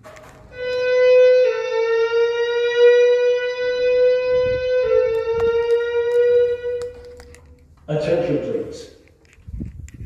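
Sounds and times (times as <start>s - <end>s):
buzzy fire alarm tone: 0.4s - 8.5s
spoken messages over loudspeakers: 7.9s - 9.0s.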